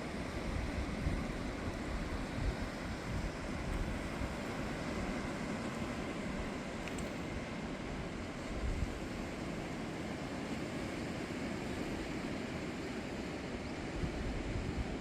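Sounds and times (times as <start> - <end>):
sea surf: 0.0 - 15.0
wind: 0.0 - 15.0
wind gusts buffeting microphone: 0.2 - 6.8, 7.4 - 9.4, 13.9 - 15.0.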